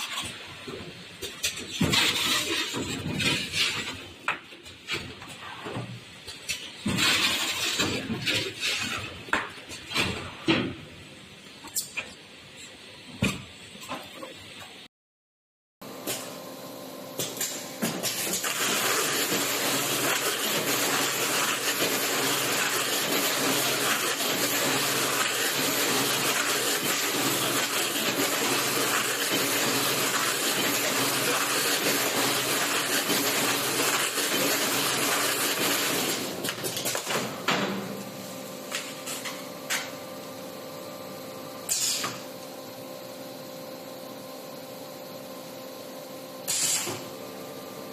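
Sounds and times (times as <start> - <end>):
taping machine motor and belt: 17.2 - 37.2.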